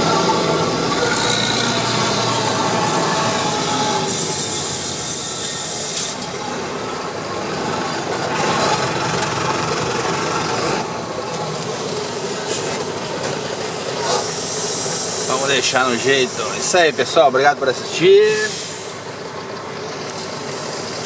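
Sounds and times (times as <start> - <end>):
diesel truck engine deep exhaust: 0.0 - 21.0
loud hiss: 2.6 - 6.2, 13.6 - 17.3, 18.0 - 19.1.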